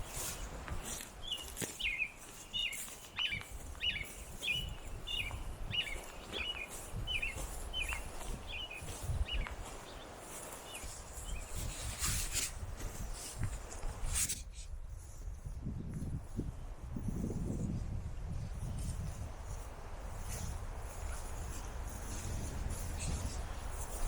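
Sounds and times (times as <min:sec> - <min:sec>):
bird chirping: 0:00.0 - 0:11.8.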